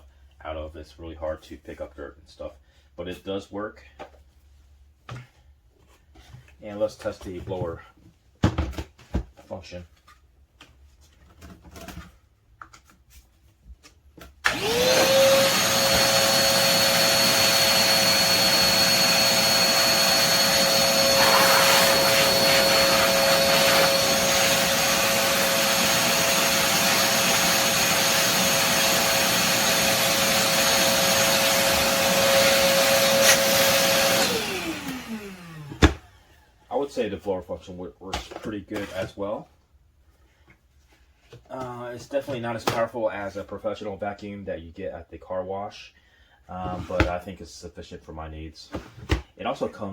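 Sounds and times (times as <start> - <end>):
vacuum motor whine: 14.5 - 36.3.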